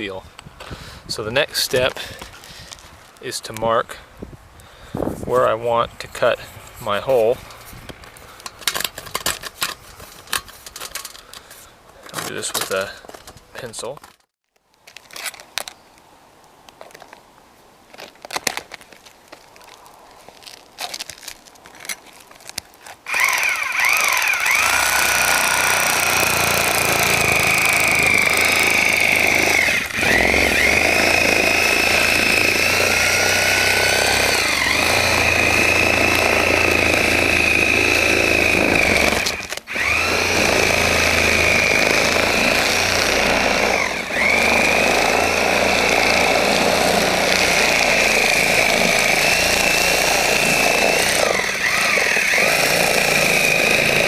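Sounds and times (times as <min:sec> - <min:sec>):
power saw cutting shingles: 0:23.0 - 0:54.0.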